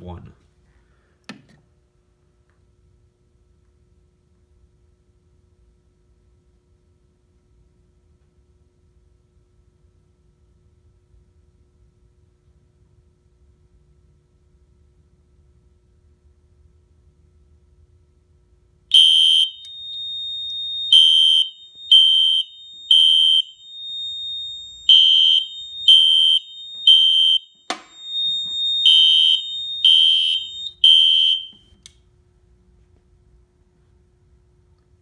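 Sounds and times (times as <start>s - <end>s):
fire alarm horn blasts: 18.9s - 31.8s
steady high beep: 19.0s - 31.6s.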